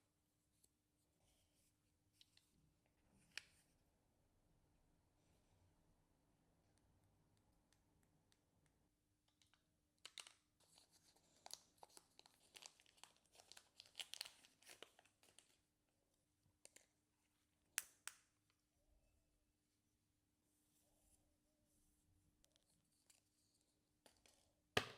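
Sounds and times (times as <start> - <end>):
packaging crinkling: 10.0 - 15.5.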